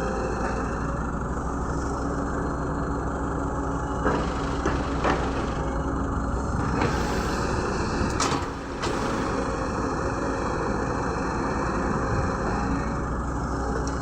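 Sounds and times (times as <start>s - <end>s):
excavator diesel engine running: 0.0s - 14.0s
brief hiss: 6.8s - 9.8s.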